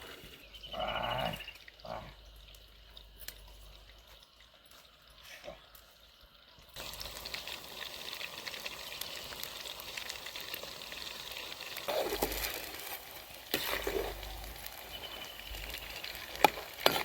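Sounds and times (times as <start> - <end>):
food sizzling in oil: 6.8 - 17.0
stirring in pan: 6.8 - 17.0.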